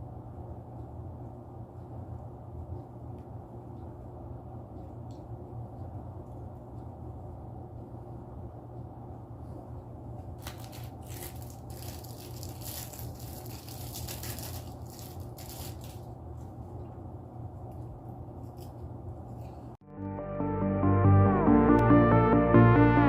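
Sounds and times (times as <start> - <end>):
steady low hum: 0.0 - 23.0
snack crinkling and crunching: 10.4 - 16.1.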